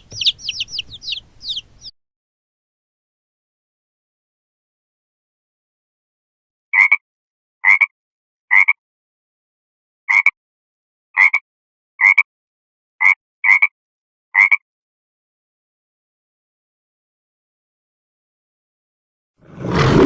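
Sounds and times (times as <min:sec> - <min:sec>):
frog croaking: 0:06.8 - 0:07.0, 0:07.6 - 0:07.9, 0:08.5 - 0:08.8, 0:11.2 - 0:11.4, 0:14.4 - 0:14.6.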